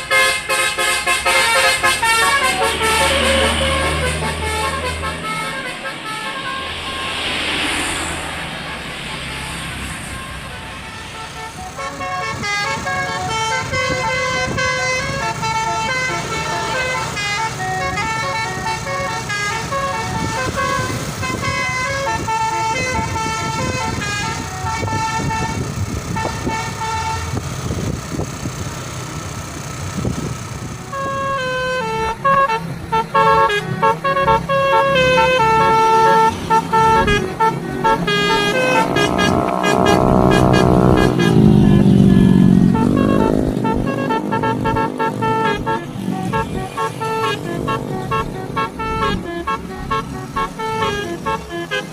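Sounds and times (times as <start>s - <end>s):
musical horn playing a tune: 0.0s - 27.4s, 30.9s - 51.9s
low rumble of bus: 0.0s - 51.9s
rising sweep: 1.9s - 12.1s, 34.3s - 50.5s.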